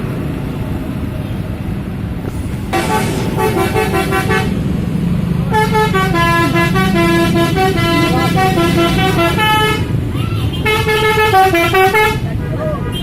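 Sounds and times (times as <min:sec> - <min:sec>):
bus engine running: 0:00.0 - 0:13.0
bus horn playing a tune: 0:02.7 - 0:04.7, 0:05.4 - 0:13.0.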